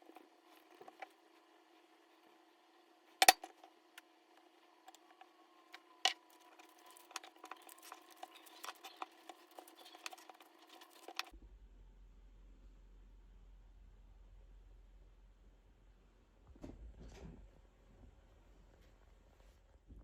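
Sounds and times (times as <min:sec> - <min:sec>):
household objects clicking and tapping: 0:03.2 - 0:04.1, 0:05.8 - 0:11.3.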